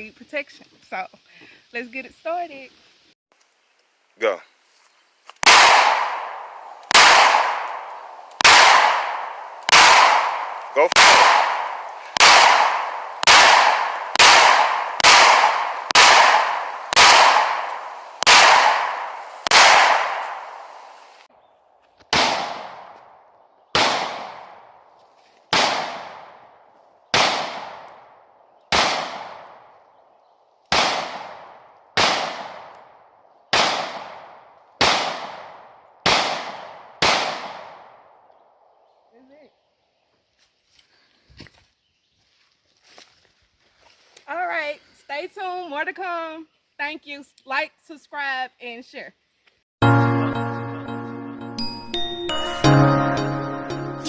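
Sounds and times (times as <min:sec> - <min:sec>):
pistol shots with echo: 0:05.4 - 0:20.6, 0:22.1 - 0:24.8, 0:25.5 - 0:29.7, 0:30.7 - 0:32.9, 0:33.5 - 0:38.3.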